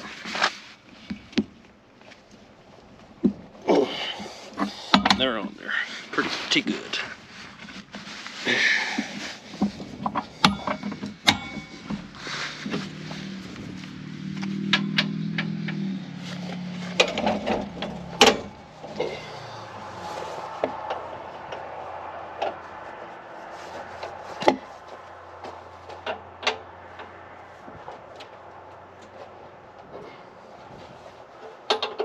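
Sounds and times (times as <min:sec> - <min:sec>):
metal clanks and knocks: 0:09.0 - 0:12.2, 0:14.4 - 0:15.8, 0:16.9 - 0:19.4, 0:25.8 - 0:27.2, 0:31.4 - 0:32.0
low hum: 0:10.5 - 0:31.6.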